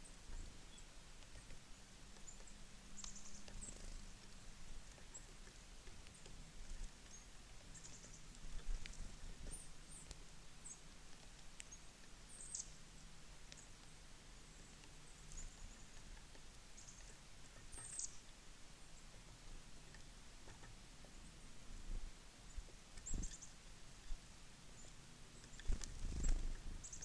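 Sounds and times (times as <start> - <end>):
songbirds chip calls: 0.0 - 10.9, 11.6 - 12.9, 13.5 - 21.4, 22.4 - 27.0
faint sharp clicks: 2.2 - 12.7, 13.5 - 14.0.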